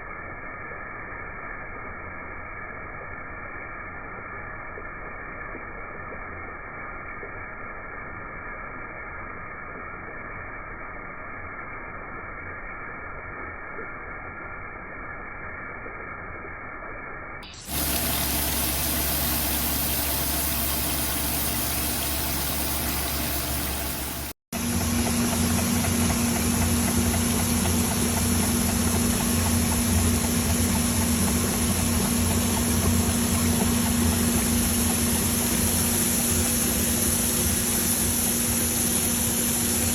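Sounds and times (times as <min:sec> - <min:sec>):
high whine: 0:14.8 - 0:39.9
grinding machine humming: 0:17.5 - 0:39.9.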